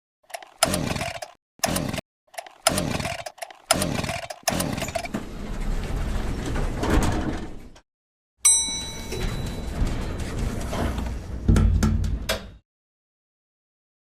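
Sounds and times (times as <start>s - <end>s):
chainsaw engine sputtering: 0.3s - 5.0s.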